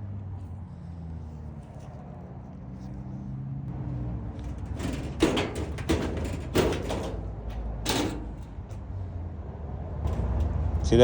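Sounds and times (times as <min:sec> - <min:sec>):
sheet metal scraping and clattering: 0:04.0 - 0:09.2, 0:09.9 - 0:11.0.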